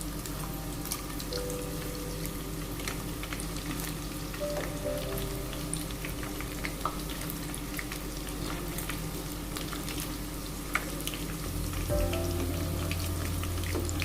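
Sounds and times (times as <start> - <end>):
food frying in hot oil: 0.0 - 14.0
oil crackling and popping: 2.2 - 4.8, 5.4 - 14.0.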